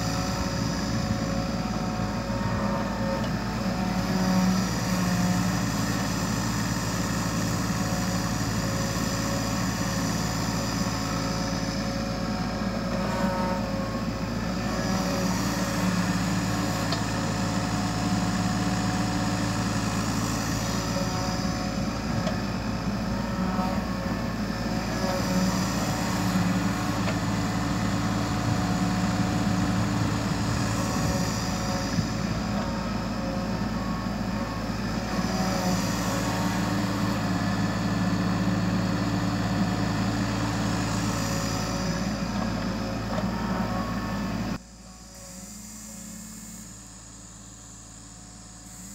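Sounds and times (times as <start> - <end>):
excavator digging soil: 0.0 - 44.5
excavator diesel engine running: 0.0 - 48.9.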